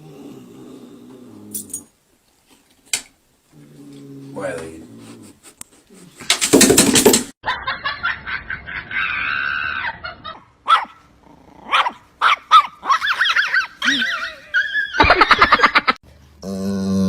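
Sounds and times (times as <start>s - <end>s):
dog barking and yipping: 9.8s - 11.0s, 11.7s - 15.0s.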